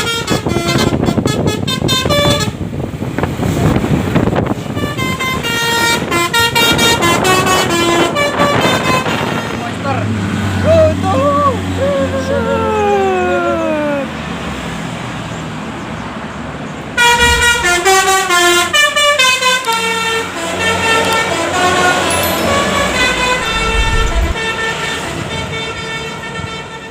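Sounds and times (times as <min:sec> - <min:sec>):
bus engine running: 0:02.0 - 0:14.3, 0:15.0 - 0:26.6
multi-tone musical air horn tune: 0:04.5 - 0:09.6, 0:17.0 - 0:26.9.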